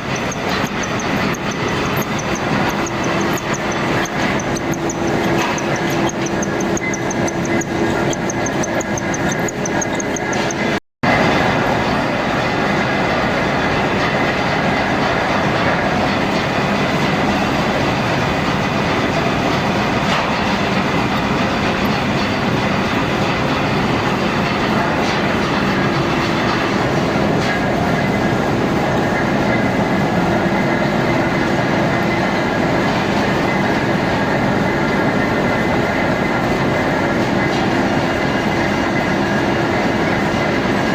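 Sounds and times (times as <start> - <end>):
machine tool cutting a shaft: 0.0 - 10.8, 14.0 - 28.2.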